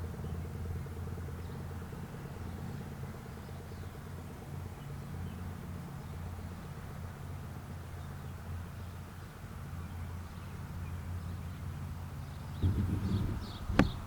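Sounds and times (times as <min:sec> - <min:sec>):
vehicle engine idling: 0:00.0 - 0:14.0.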